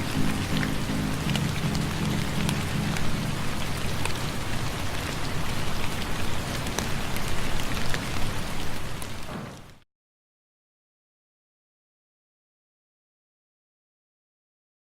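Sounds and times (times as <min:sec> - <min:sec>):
raindrops ticking: 0:00.0 - 0:08.2
steady rain falling: 0:00.0 - 0:09.8.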